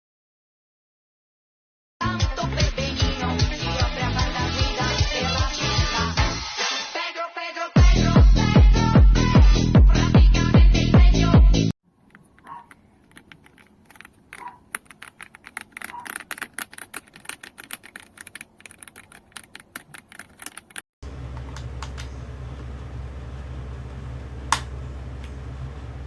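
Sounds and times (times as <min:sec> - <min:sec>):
clicks: 0:12.0 - 0:20.8
mechanical keyboard typing: 0:12.1 - 0:20.8
steady low hum: 0:21.0 - 0:26.0.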